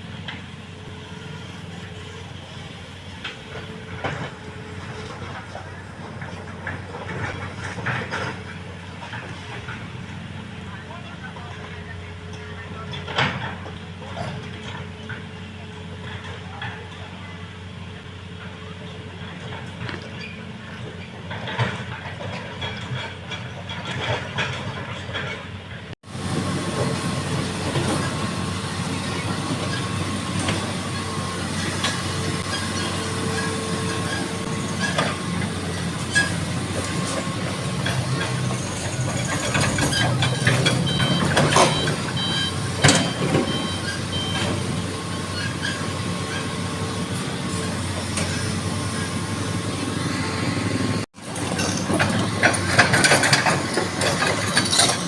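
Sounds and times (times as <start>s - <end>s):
excavator diesel engine running: 0.0s - 55.0s
machine knocks and clanks: 31.6s - 44.7s, 51.3s - 55.0s
high beeps: 40.3s - 44.5s.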